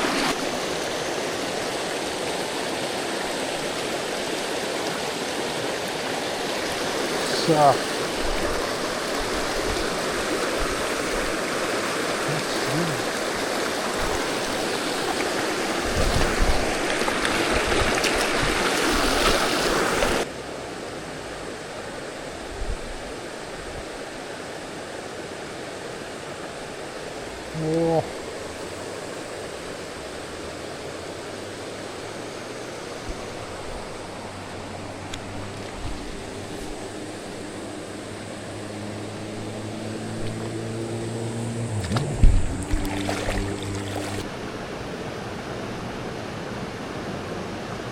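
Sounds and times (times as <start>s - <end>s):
river rushing over rocks: 0.0s - 27.5s, 28.1s - 47.9s
low thumps: 41.4s - 44.2s.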